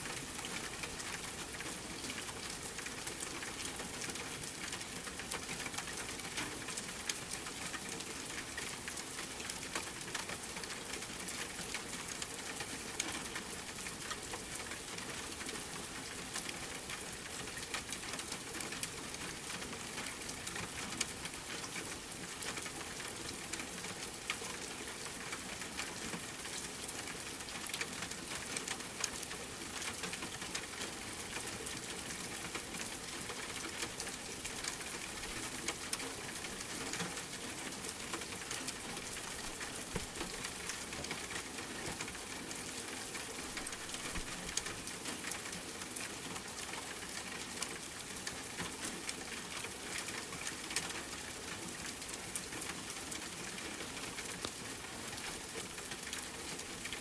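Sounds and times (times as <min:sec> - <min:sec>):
steady rain falling: 0:00.0 - 0:57.0
wood fire crackling: 0:38.5 - 0:40.9, 0:43.5 - 0:44.8.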